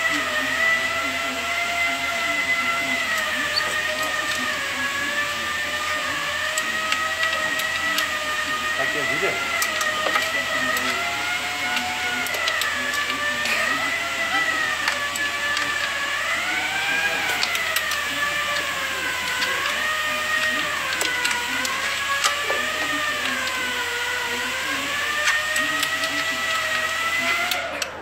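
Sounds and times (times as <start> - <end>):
small motor whining: 0.0 - 28.0
scattered clicks: 11.8 - 13.6, 17.2 - 23.7.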